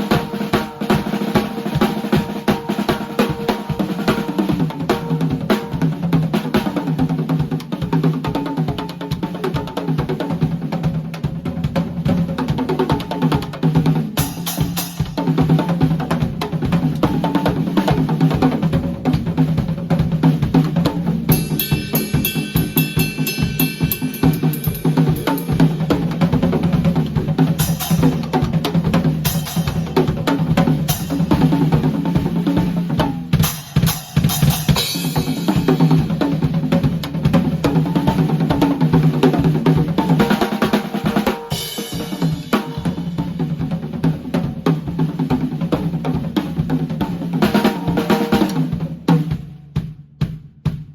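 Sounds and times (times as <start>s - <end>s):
drum kit fast beat: 0.0s - 50.9s.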